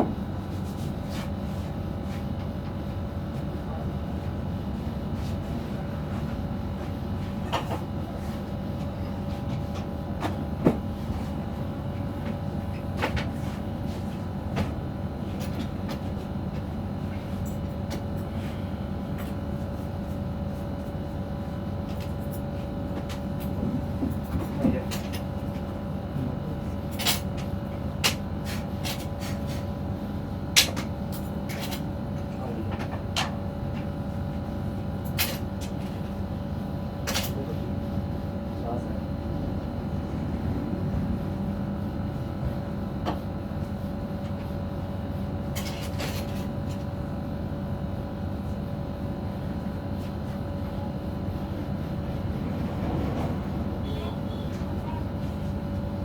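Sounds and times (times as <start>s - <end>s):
steady hum: 26.1s - 56.0s.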